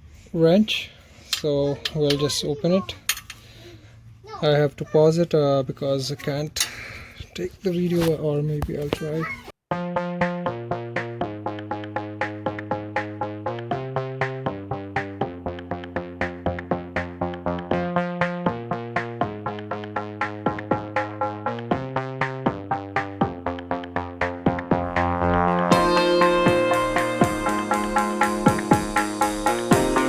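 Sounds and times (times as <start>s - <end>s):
electronic music with synthesizer: 9.7s - 30.0s.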